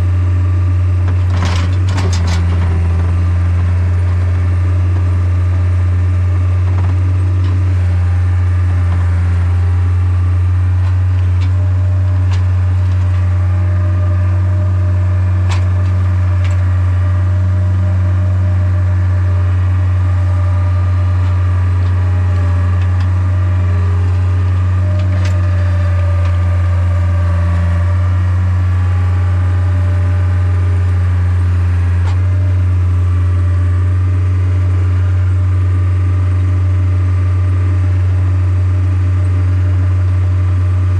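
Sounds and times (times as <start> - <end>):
engine idling: 0.0 - 40.9.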